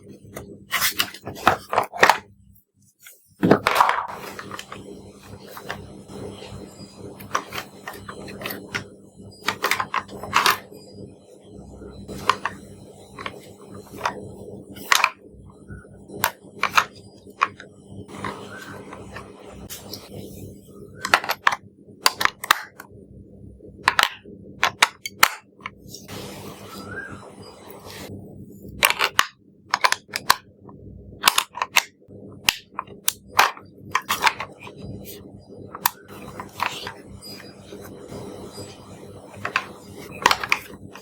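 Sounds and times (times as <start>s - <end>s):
faint steady hum: 0.0s - 41.0s
hard objects clicking and knocking: 7.2s - 10.7s, 16.2s - 17.6s, 21.0s - 22.8s, 23.9s - 25.8s, 31.2s - 34.9s, 39.3s - 41.0s.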